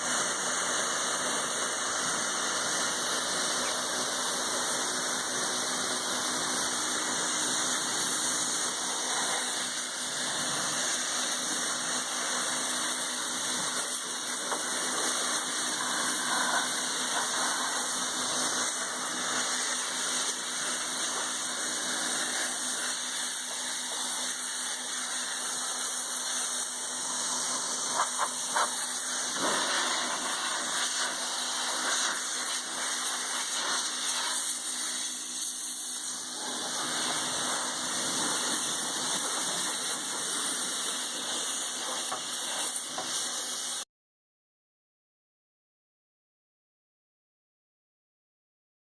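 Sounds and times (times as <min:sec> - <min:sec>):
pressure washer pump humming: 0:00.0 - 0:43.8
water jet hissing: 0:00.0 - 0:43.8.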